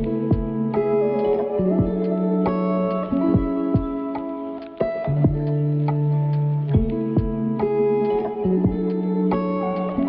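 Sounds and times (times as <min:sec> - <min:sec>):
low kick drum: 0:00.0 - 0:00.8, 0:01.7 - 0:02.2, 0:03.3 - 0:04.2, 0:05.1 - 0:06.0, 0:06.7 - 0:07.5, 0:08.6 - 0:09.0
background music with guitar: 0:00.0 - 0:10.0.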